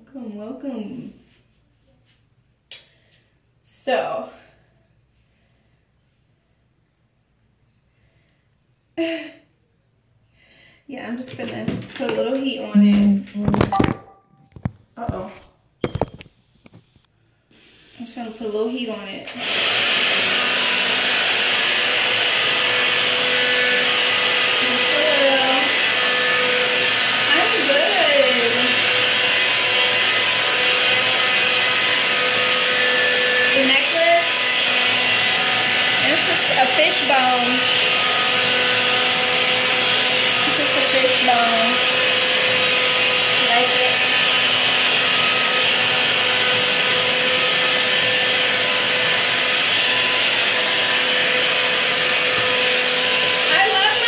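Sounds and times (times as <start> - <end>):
hair dryer running: 11.1 - 13.0, 17.6 - 54.0.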